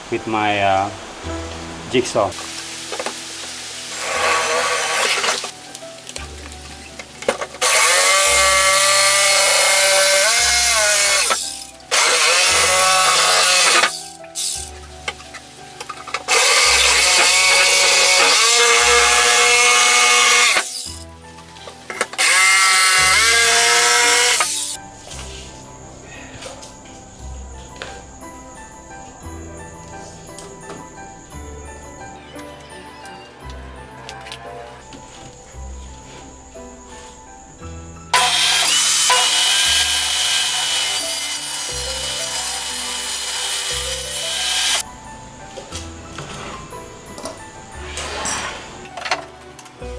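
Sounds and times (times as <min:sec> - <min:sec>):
background music: 0:00.0 - 0:49.9
jigsaw cutting wood: 0:03.9 - 0:05.6, 0:07.6 - 0:14.7, 0:16.2 - 0:21.0, 0:22.0 - 0:24.8, 0:38.2 - 0:44.8.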